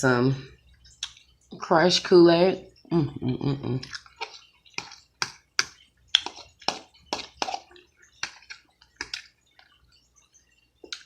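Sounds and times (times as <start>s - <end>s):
mouth chewing food: 0.7s - 1.4s, 3.8s - 11.0s.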